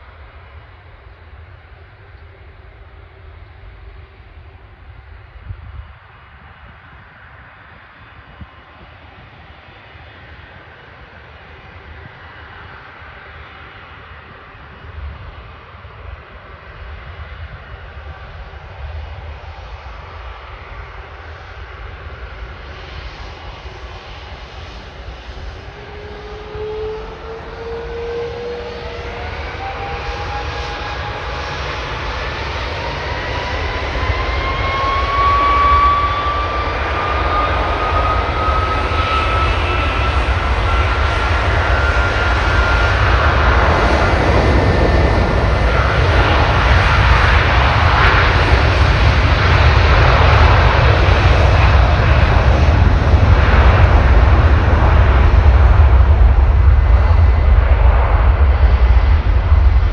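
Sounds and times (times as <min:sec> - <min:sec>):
jet engines spooling up: 0:22.7 - 0:59.9.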